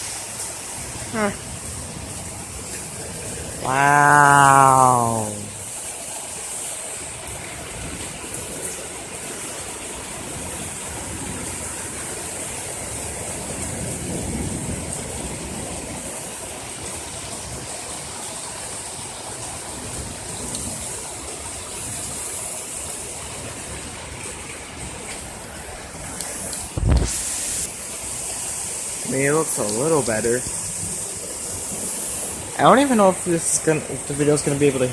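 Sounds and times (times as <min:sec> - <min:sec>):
heavy rain: 0:00.0 - 0:34.9.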